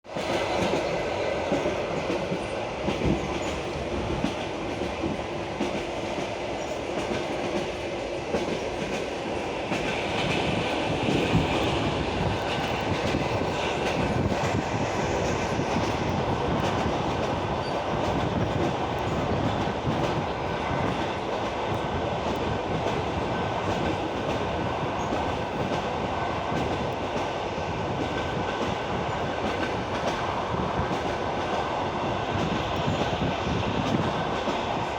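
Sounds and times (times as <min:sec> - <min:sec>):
train wheels clacking over joints: 0:00.1 - 0:31.8.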